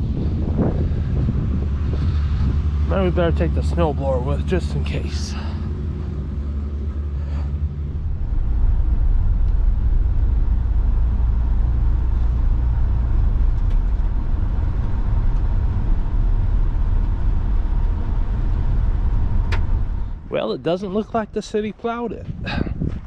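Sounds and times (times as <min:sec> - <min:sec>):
truck engine and road rumble: 0:00.0 - 0:23.0.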